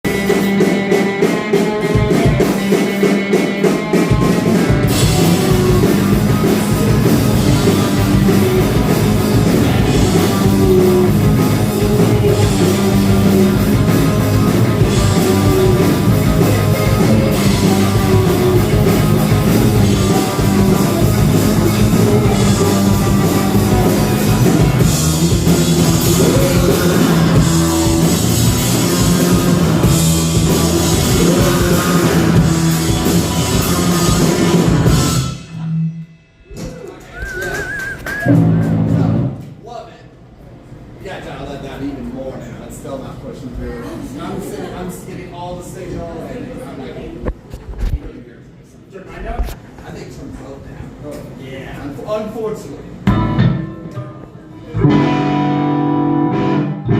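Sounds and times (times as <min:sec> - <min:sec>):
guitar and bass riff: 0:00.0 - 0:36.1, 0:38.0 - 0:39.4, 0:53.0 - 0:56.9
drum kit with cymbals: 0:00.0 - 0:39.6
rock band playing loud: 0:00.0 - 0:39.6, 0:52.9 - 0:56.9.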